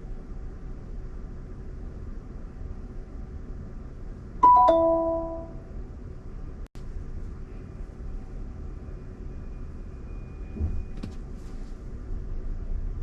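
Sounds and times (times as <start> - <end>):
road and tyre rumble: 5.8 - 13.0.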